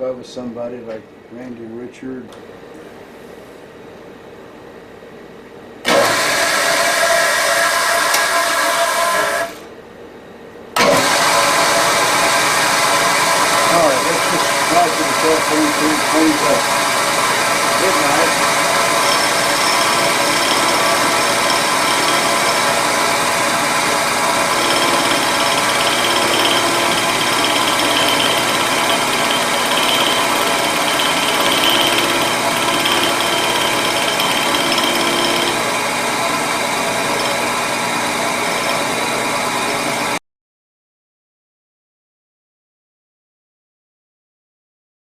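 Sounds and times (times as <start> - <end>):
milling machine cutting metal: 10.8 - 40.2.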